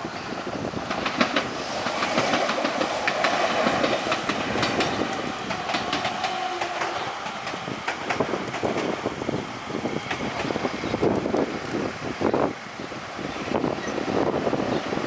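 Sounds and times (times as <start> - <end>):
train wheels clacking over rail joints: 0.5 - 11.9.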